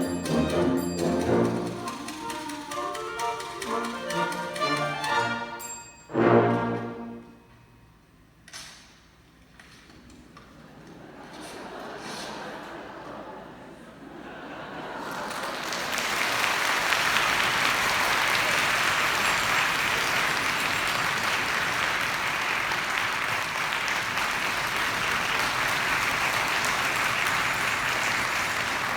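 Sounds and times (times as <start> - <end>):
audience applauding: 0.0 - 5.6, 14.6 - 28.9.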